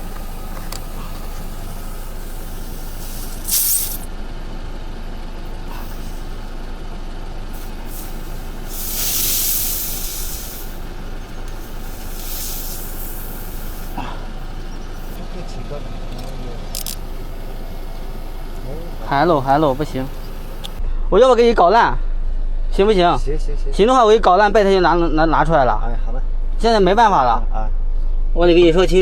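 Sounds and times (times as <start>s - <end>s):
air hissing from a tyre: 0.0s - 15.6s, 16.6s - 20.8s.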